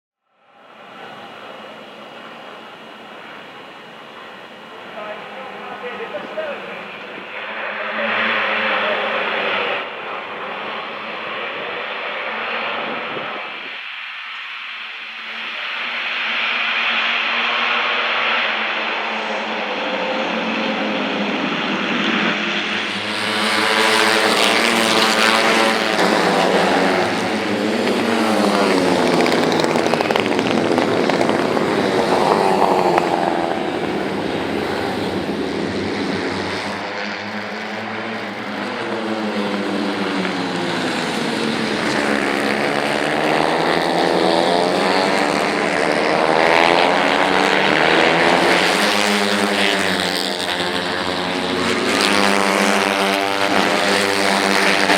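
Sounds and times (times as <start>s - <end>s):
racing motorcycles revving past: 22.2s - 54.9s.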